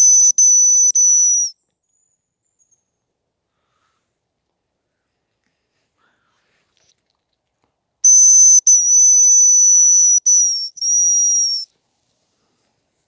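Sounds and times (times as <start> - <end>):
high thin decoy whistles: 0.0 - 1.6, 8.1 - 11.7.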